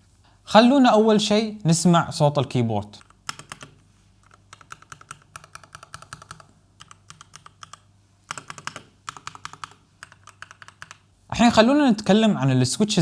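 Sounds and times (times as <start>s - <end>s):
mechanical keyboard typing: 3.0s - 11.0s.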